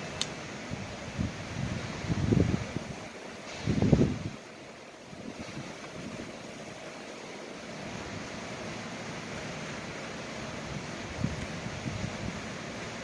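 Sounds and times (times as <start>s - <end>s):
strong wind buffeting microphone: 0.5s - 4.5s, 5.1s - 6.8s, 10.6s - 13.0s.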